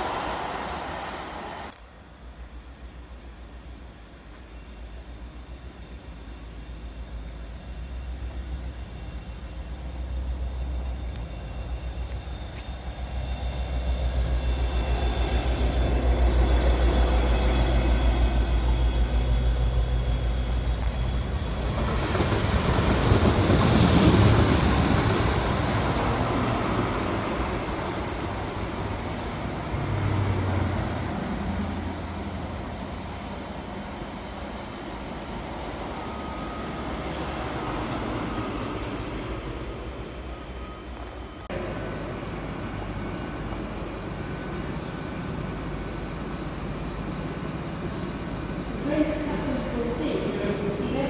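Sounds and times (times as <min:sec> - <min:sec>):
train passing by: 0:00.0 - 0:51.0.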